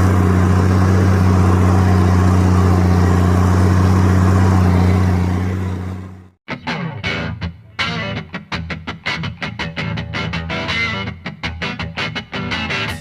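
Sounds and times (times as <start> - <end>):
tractor diesel engine drone: 0.0 - 6.4.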